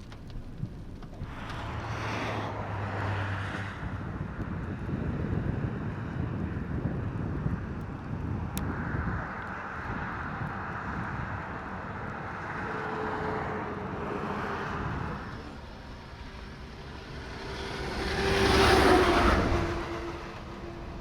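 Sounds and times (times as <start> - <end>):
wind rushing: 0.0 - 21.0
vehicle passing by: 1.2 - 4.6, 9.6 - 21.0.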